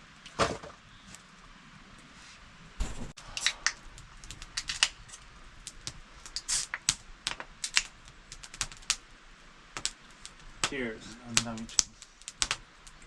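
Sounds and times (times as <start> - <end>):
low rumbling thump: 2.8 - 3.3
sharp clicks and snaps: 11.4 - 13.0.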